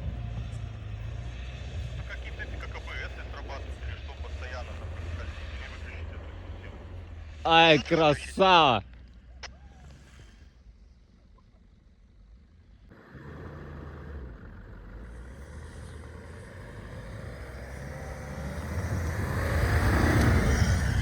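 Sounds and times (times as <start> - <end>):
suv engine revving under load: 12.9 - 21.0.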